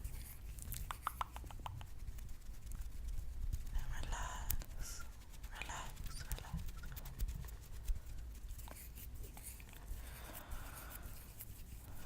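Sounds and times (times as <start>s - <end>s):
fingernails scratching a palm: 0.0s - 9.8s, 10.7s - 11.8s.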